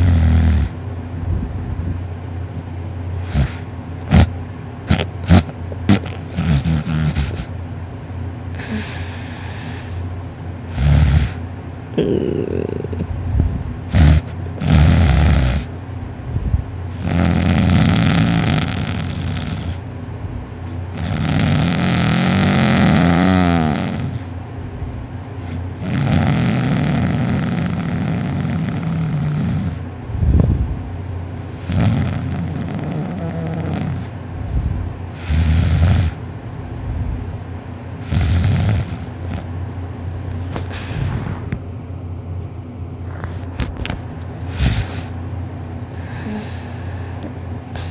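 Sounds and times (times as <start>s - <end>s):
man snoring heavily: 0.0s - 0.8s, 3.2s - 4.3s, 4.9s - 7.5s, 8.6s - 10.0s, 10.7s - 11.4s, 12.0s - 13.1s, 13.9s - 15.7s, 16.9s - 19.8s, 20.9s - 24.3s, 25.4s - 29.8s, 31.6s - 34.1s, 35.1s - 36.2s, 38.0s - 39.5s, 44.5s - 45.1s.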